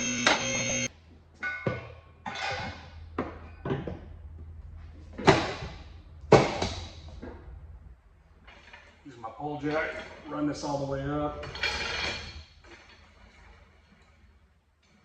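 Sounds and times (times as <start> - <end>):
lift motor humming: 0.0 - 0.9.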